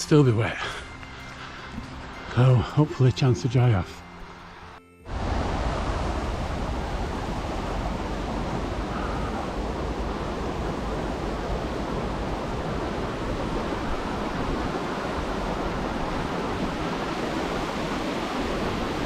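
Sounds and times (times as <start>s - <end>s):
wind and rain rushing: 4.4s - 19.0s
wind buffeting microphone: 5.1s - 19.0s.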